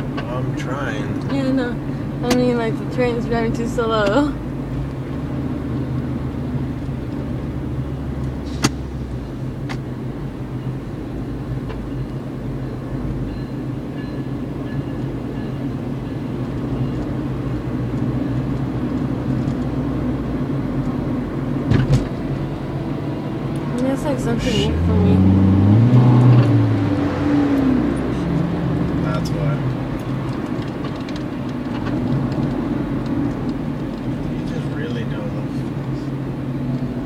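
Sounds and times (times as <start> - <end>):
car cabin hum: 0.0 - 13.3, 16.3 - 37.0.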